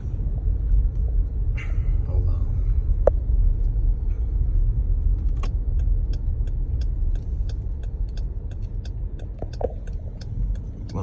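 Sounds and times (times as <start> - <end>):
road and engine rumble: 0.0 - 11.0
turn signal ticking: 4.5 - 11.0.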